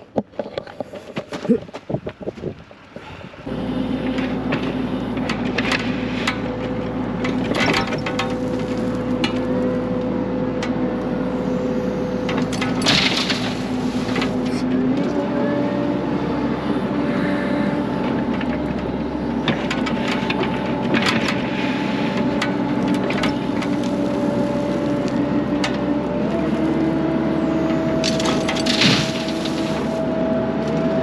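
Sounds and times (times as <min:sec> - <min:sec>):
construction machine engine and hydraulics: 0:02.7 - 0:31.0
material crunching into trailer: 0:12.7 - 0:14.6, 0:28.0 - 0:30.0.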